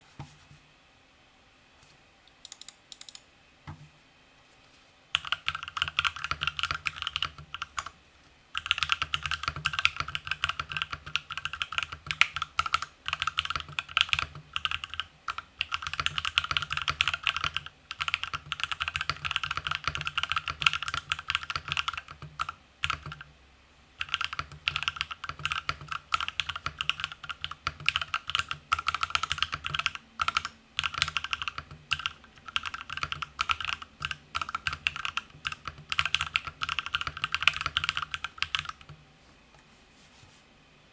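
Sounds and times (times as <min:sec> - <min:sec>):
mechanical keyboard typing: 0:02.4 - 0:03.2, 0:05.2 - 0:07.9, 0:08.6 - 0:23.3, 0:24.0 - 0:39.0.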